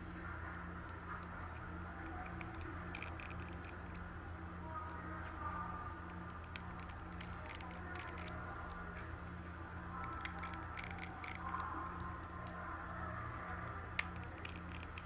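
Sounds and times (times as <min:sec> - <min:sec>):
steady low hum: 0:00.0 - 0:15.0
small repair tools clicking: 0:00.9 - 0:04.0, 0:06.1 - 0:09.1, 0:10.0 - 0:12.6, 0:13.3 - 0:15.0.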